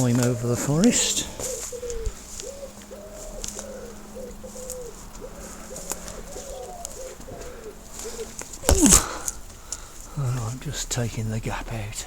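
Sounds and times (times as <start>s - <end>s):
pigeon cooing: 0.0s - 10.4s.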